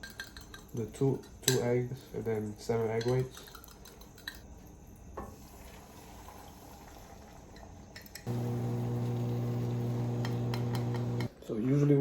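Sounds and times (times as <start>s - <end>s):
low electrical hum: 8.2s - 11.3s.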